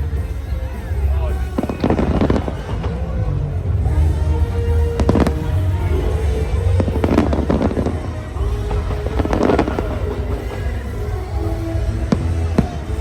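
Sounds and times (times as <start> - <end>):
loud show music: 0.0 - 13.0
fireworks bangs and crackles: 0.1 - 13.0.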